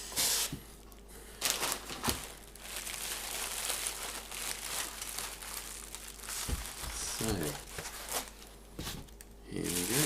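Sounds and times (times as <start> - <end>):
plastic and tissue paper rustling: 1.4 - 10.0.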